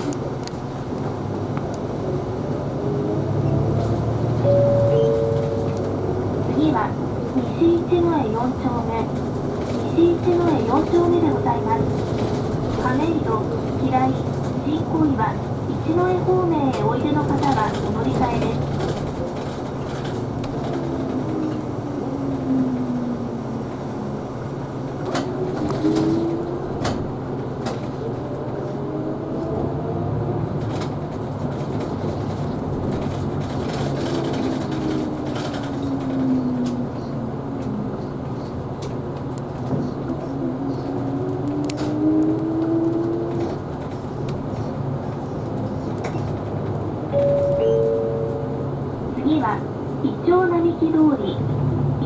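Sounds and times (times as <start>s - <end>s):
bus drivetrain hum and whine: 0.0s - 52.0s.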